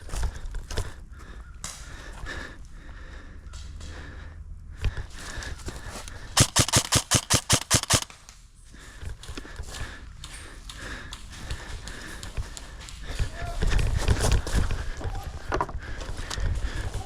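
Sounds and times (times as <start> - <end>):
airsoft gun shots: 6.4 - 8.1.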